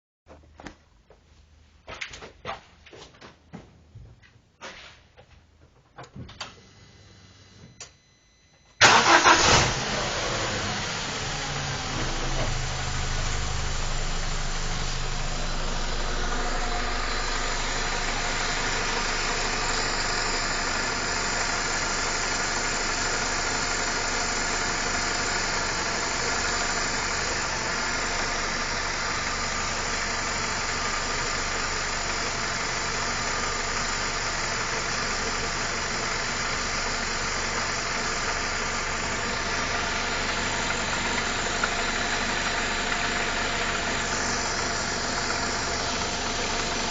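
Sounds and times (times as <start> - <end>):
car engine idling: 8.8 - 46.9.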